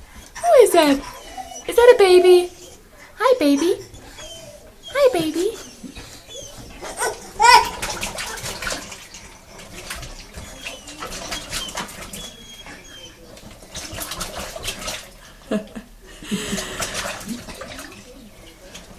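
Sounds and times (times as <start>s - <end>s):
bath water splashing: 0.0s - 18.9s
child squeaks: 7.0s - 7.8s.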